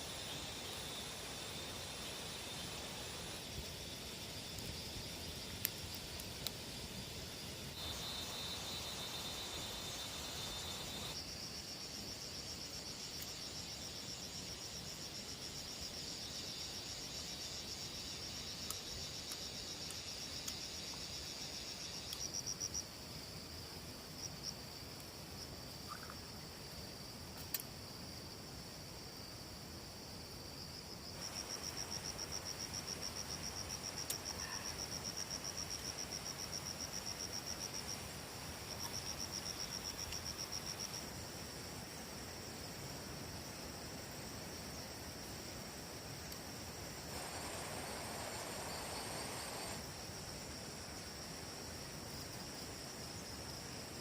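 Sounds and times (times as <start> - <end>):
insects chirring: 0.0 - 54.0.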